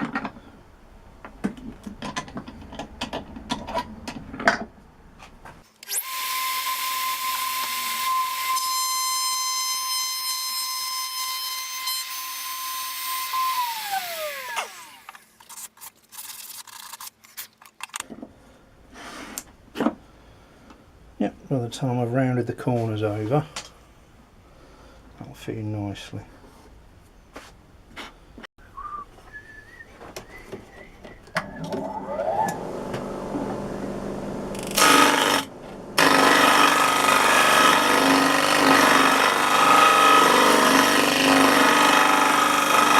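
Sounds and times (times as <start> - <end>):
tool handling clicks and knocks: 1.2 - 5.6
router motor whine: 31.8 - 42.9
router motor winding down: 31.8 - 42.9.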